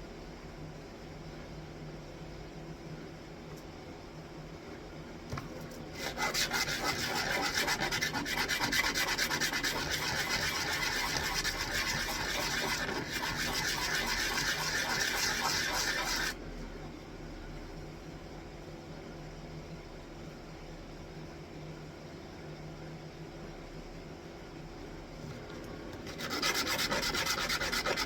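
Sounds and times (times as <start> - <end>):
wood sanded by hand: 6.0 - 16.4, 26.1 - 28.0.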